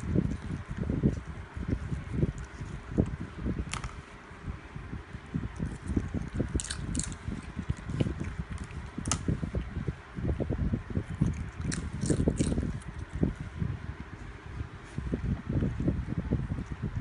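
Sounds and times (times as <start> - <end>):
dog chewing crunchy chips: 5.6 - 9.4, 11.0 - 13.2.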